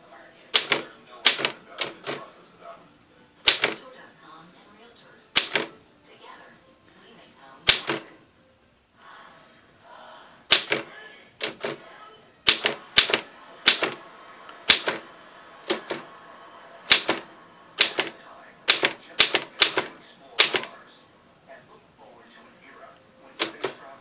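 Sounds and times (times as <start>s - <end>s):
typewriter keys clacking: 0.5s - 2.2s, 3.4s - 3.8s, 5.4s - 5.7s, 7.7s - 8.0s, 10.5s - 11.8s, 12.5s - 14.0s, 14.6s - 16.1s, 16.9s - 20.8s, 23.4s - 23.8s.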